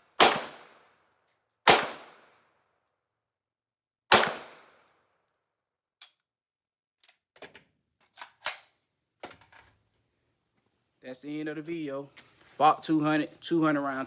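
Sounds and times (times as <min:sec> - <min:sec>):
pistol shot: 0:00.1 - 0:00.9, 0:01.7 - 0:02.4, 0:04.1 - 0:04.8.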